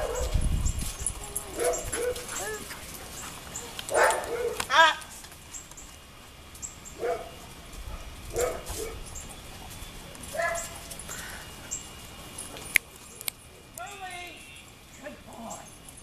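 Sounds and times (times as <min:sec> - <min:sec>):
dog barking: 0:00.0 - 0:00.4, 0:01.5 - 0:02.6, 0:03.9 - 0:04.7, 0:07.0 - 0:09.1, 0:10.3 - 0:10.8.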